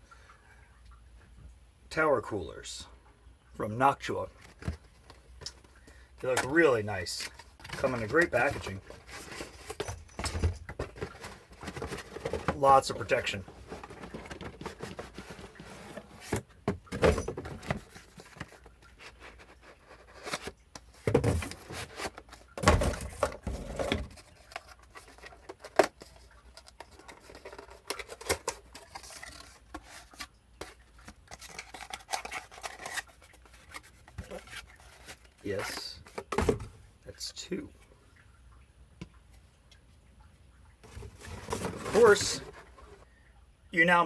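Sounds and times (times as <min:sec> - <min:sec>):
packaging rustling and scraping: 0:06.2 - 0:36.7, 0:40.8 - 0:43.1.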